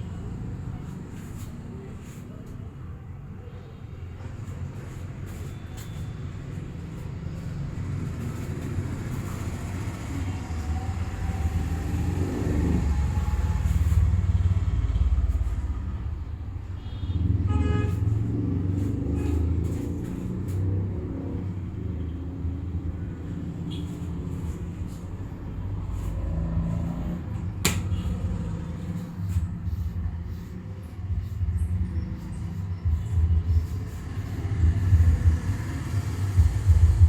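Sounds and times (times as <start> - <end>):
road traffic rumbling: 0.0 - 37.0
vehicle horn toot: 16.8 - 18.1.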